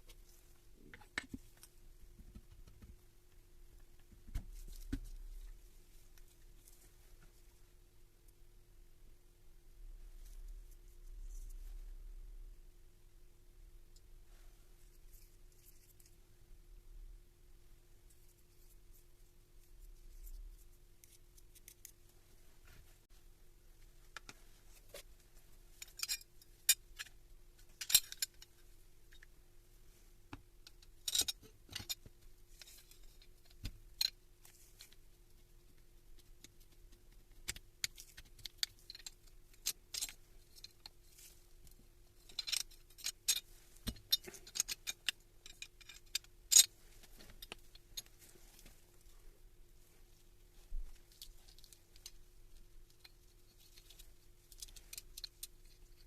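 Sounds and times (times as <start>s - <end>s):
faint steady hum: 0.0s - 56.0s
metal parts clicking and clinking: 25.8s - 28.6s, 30.7s - 32.0s, 42.2s - 46.7s.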